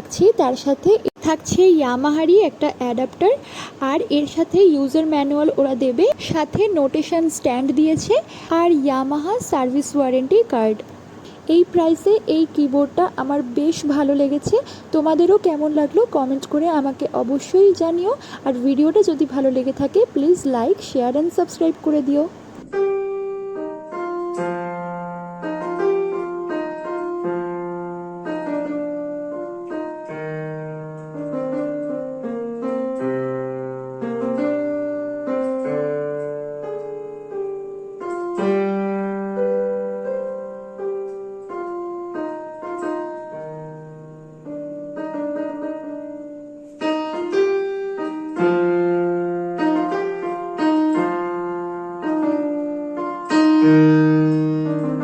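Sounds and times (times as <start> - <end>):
keyboard piano melody over chords: 22.3 - 55.0.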